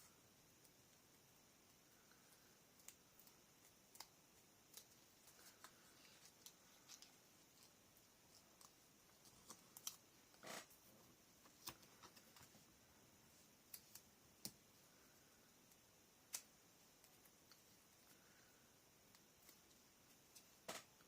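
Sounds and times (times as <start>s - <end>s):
soft paper rustle: 2.0s - 12.7s.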